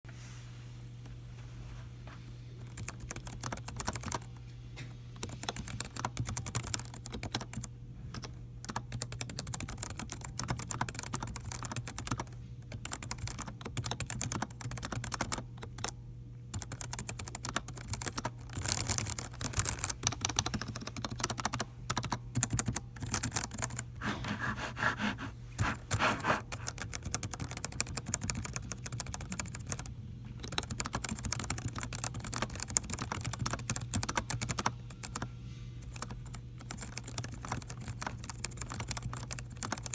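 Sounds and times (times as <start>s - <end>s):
steady low hum: 16.1s - 27.2s.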